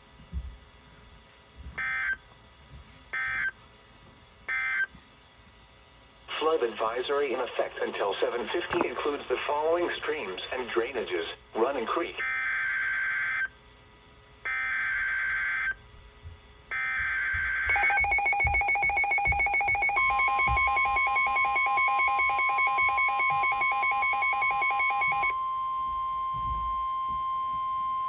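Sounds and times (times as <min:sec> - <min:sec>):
steady alarm tone: 0:16.7 - 0:28.0
digital data bursts: 0:17.7 - 0:25.3
rapid pulsing electronic beeping: 0:17.7 - 0:25.3.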